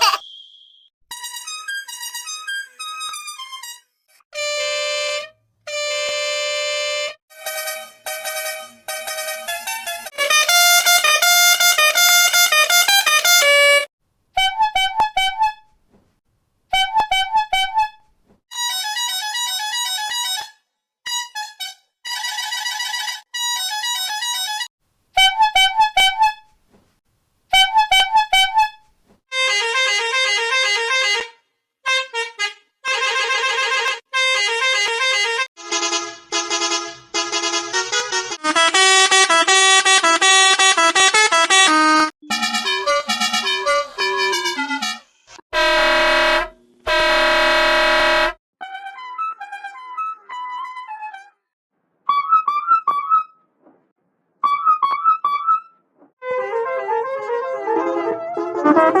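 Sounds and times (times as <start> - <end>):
bus horn honks: 4.4 - 13.9, 31.9 - 50.6.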